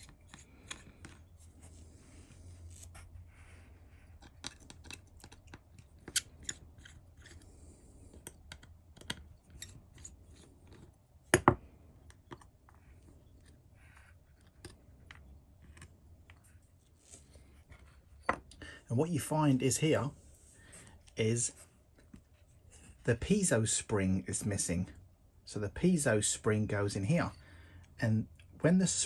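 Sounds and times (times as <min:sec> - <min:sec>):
screwdriver metallic clicks and scrapes: 0:04.1 - 0:07.4, 0:08.1 - 0:10.9.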